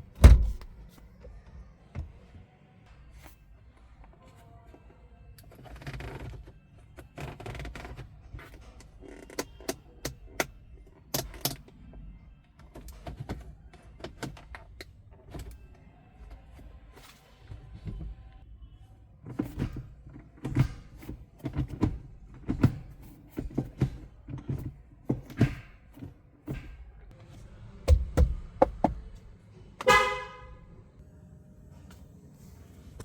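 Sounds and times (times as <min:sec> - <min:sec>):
car horn honk: 0:29.8 - 0:30.7.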